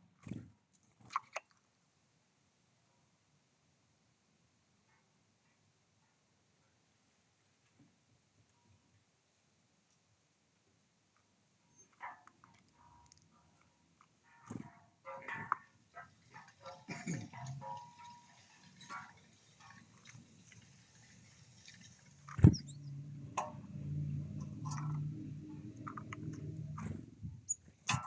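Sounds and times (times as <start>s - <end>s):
low steady hum: 16.6s - 28.0s
sharp thump: 22.4s - 22.8s.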